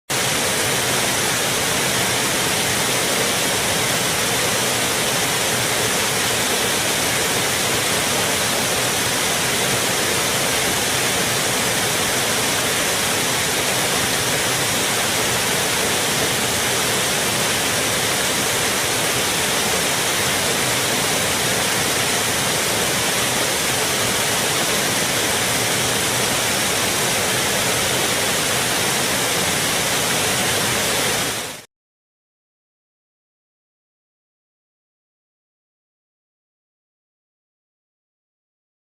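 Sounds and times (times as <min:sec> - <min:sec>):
fountain water splashing: 0:00.1 - 0:31.6.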